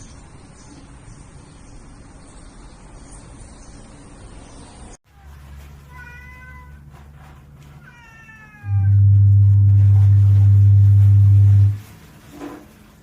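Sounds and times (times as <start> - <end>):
cat meowing: 5.9 - 6.9, 7.8 - 9.7
loud low hum: 8.7 - 11.8.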